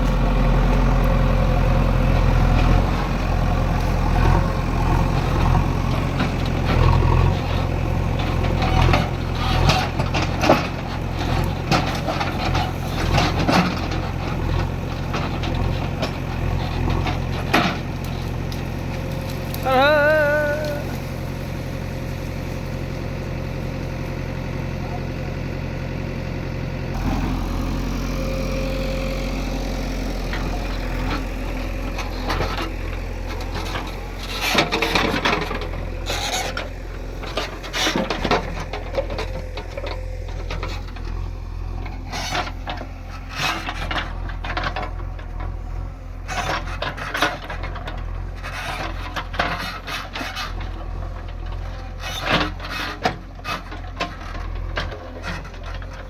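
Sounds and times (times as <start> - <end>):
diesel engine running: 0.0 - 56.0
bucket scraping and rattling: 29.7 - 45.6.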